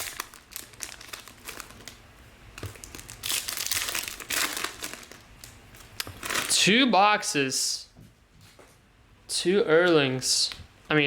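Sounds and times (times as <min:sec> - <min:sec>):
plastic packaging crinkling and tearing: 0:00.0 - 0:06.6.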